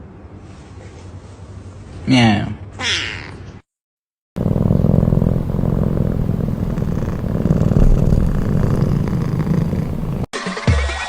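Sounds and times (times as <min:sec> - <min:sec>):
cat purring: 0:04.4 - 0:10.3.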